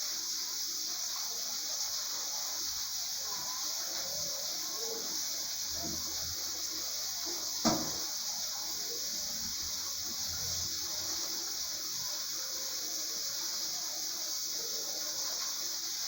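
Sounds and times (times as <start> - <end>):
shower spray hissing: 0.0 - 16.0
sharp knock: 7.6 - 8.1.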